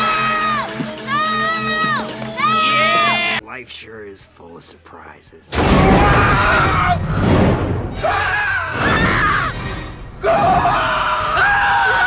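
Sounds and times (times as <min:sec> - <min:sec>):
dense film score: 0:05.1 - 0:12.0
crashing noise: 0:05.5 - 0:08.0
long loud screams: 0:10.2 - 0:12.0.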